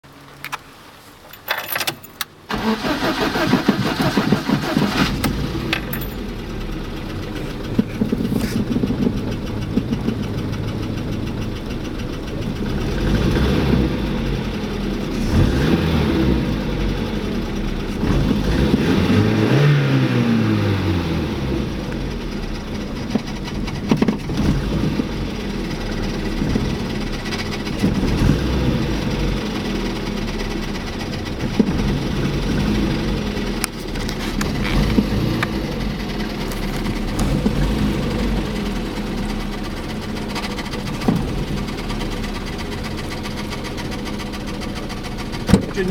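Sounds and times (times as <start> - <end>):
car engine starting and revving: 2.4 - 45.9.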